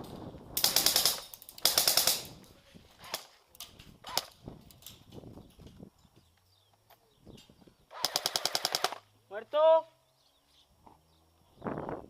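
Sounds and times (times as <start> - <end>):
airsoft rifle firing bursts: 0.6 - 2.4, 7.9 - 9.0.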